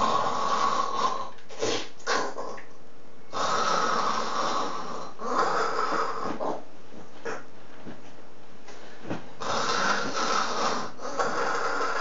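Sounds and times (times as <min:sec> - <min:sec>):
person snoring loudly: 0:00.0 - 0:02.6, 0:03.3 - 0:06.5, 0:09.4 - 0:12.0
person snorting: 0:00.0 - 0:02.6, 0:09.4 - 0:12.0.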